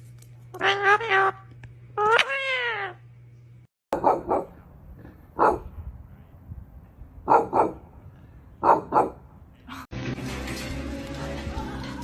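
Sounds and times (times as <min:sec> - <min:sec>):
dog barking: 0:03.9 - 0:04.6, 0:05.4 - 0:05.7, 0:07.2 - 0:07.8, 0:08.6 - 0:09.2.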